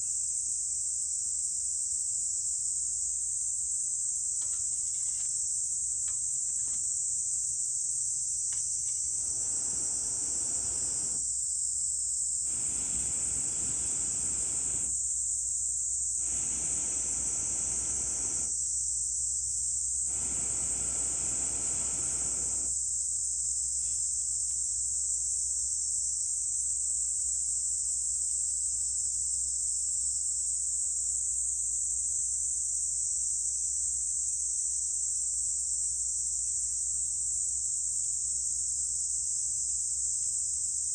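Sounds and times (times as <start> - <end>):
insects droning: 0.1 - 25.9.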